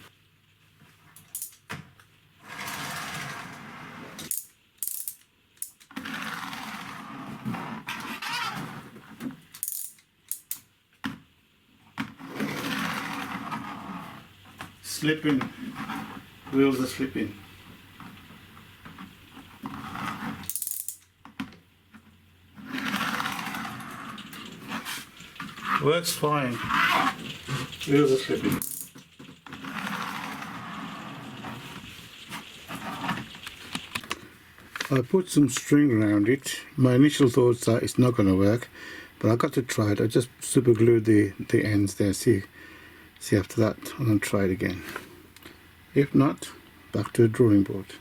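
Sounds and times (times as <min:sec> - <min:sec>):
wind-up toy car gears whirring: 0:04.2 - 0:07.0, 0:09.5 - 0:10.6, 0:19.7 - 0:21.1, 0:22.6 - 0:34.0.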